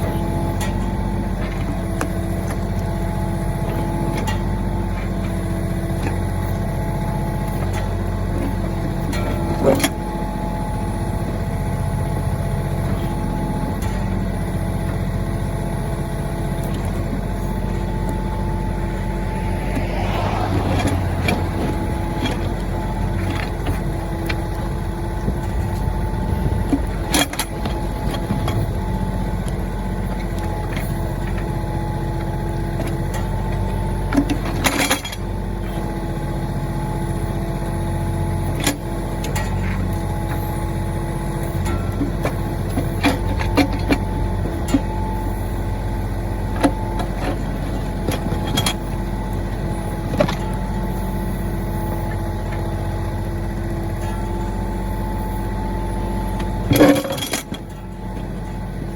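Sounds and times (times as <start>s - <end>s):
tractor diesel engine running: 0.0s - 37.0s, 38.9s - 58.9s.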